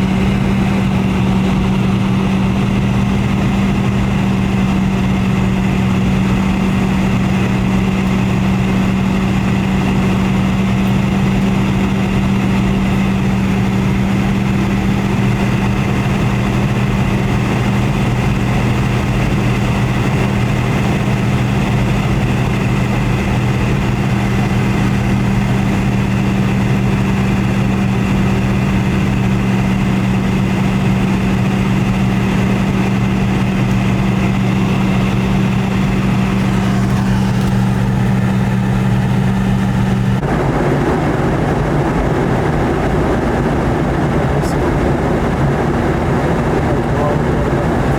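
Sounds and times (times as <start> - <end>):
airliner cabin drone: 0.0 - 47.9.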